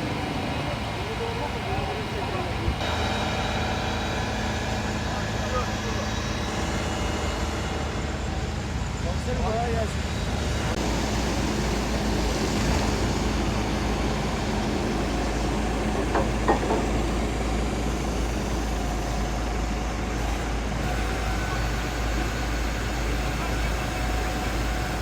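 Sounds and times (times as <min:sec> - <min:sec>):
heavy vehicle engine rumbling: 0:00.0 - 0:25.0
short knocks: 0:16.0 - 0:17.0.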